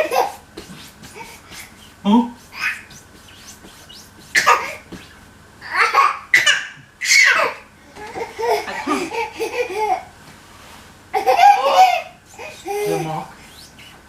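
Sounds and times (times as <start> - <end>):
baby laughing: 0.0 - 0.4, 4.3 - 4.9, 5.6 - 10.1, 11.1 - 13.0.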